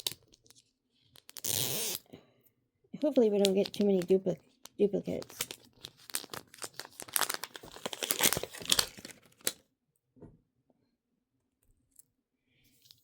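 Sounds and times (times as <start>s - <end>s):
plastic packaging crinkling: 3.2s - 4.4s, 5.1s - 9.6s.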